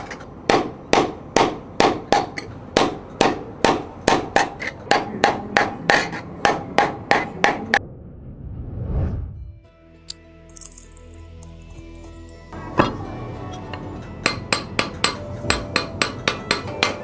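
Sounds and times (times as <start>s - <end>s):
hammer striking metal sheet: 0.0s - 7.8s.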